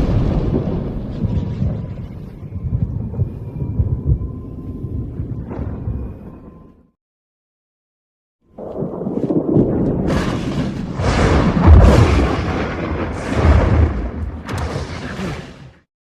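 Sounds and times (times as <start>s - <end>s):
heavy deep booms: 8.8s - 14.8s
crashing rumble: 8.8s - 15.0s
sharp crack: 10.1s - 15.6s.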